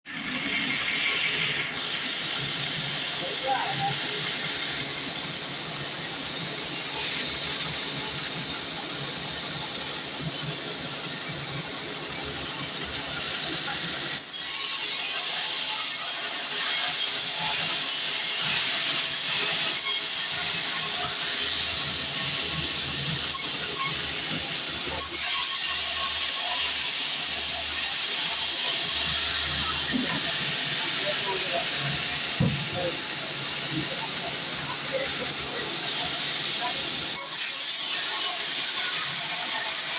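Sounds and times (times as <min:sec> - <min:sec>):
band saw running: 0:00.1 - 0:39.9
sharp knock: 0:32.4 - 0:32.8.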